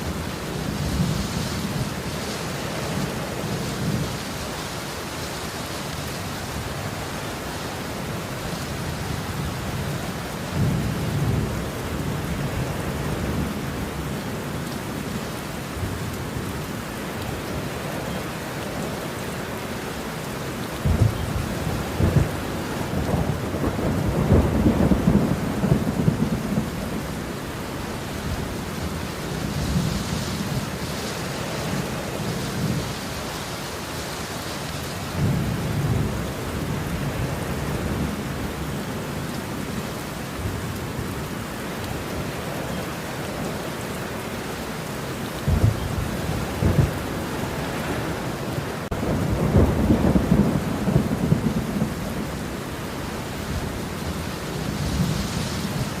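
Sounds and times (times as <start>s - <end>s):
steady rain: 0.0s - 56.0s
thunder rumbling: 20.7s - 33.2s, 45.4s - 56.0s.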